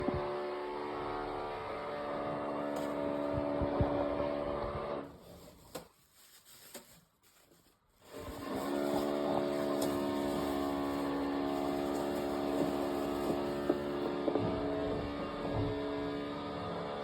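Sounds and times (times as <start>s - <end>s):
power tool motor humming: 8.1s - 16.3s.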